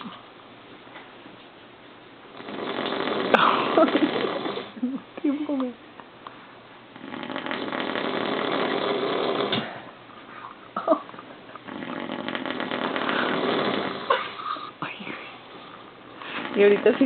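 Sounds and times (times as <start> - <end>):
person snoring: 2.4 - 4.8, 7.0 - 9.8, 11.6 - 14.8.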